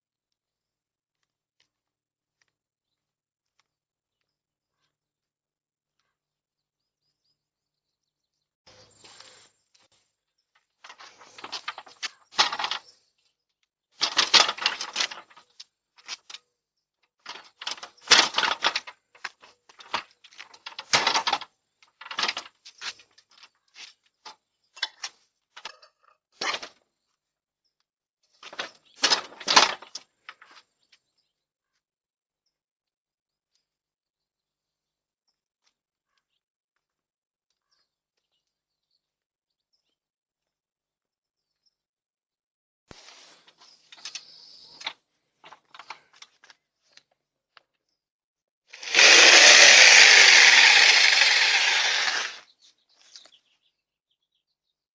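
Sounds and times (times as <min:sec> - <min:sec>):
pruners snipping: 0:48.8 - 0:52.4.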